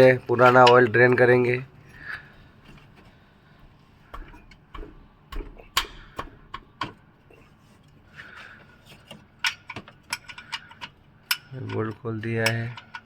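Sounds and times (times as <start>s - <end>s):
spanner clinking on metal bolt: 0.0s - 1.2s, 9.1s - 13.0s.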